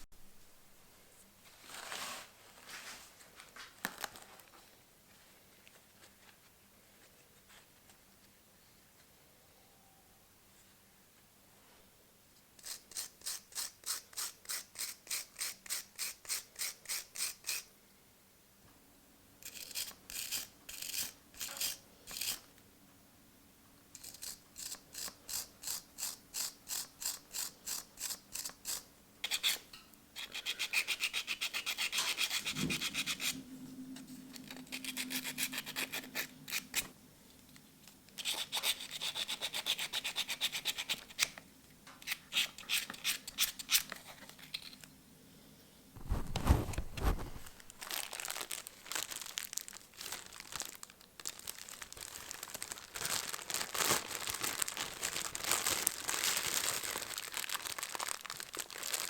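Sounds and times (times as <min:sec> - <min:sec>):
metal rasp rubbing strokes: 0:24.0 - 0:33.4.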